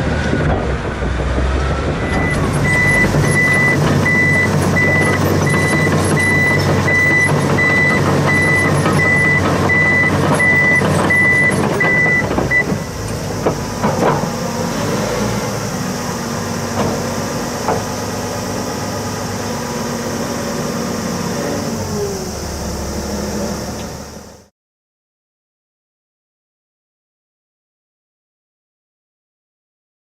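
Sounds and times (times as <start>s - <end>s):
bulldozer diesel engine running: 0.0s - 24.5s
reversing alarm beeping: 1.8s - 13.2s.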